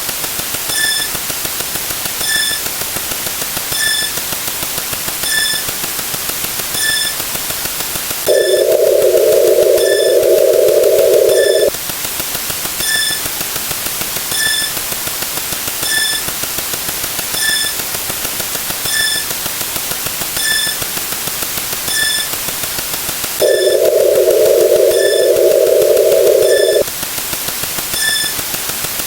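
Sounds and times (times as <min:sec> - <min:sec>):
electronic hiss: 0:08.3 - 0:11.7, 0:23.4 - 0:26.9
short high beeps: 0:08.3 - 0:11.7, 0:23.4 - 0:26.8.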